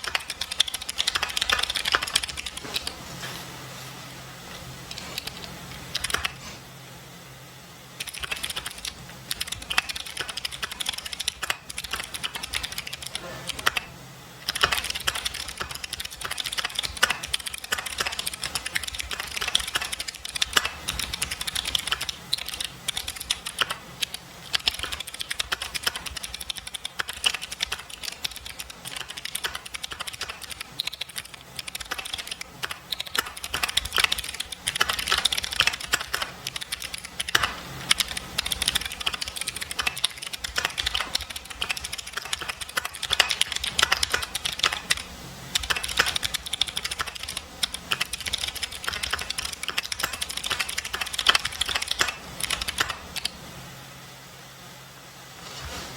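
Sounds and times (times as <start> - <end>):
fast mechanical keyboard typing: 0.0 - 2.9, 4.9 - 6.4, 8.0 - 53.4.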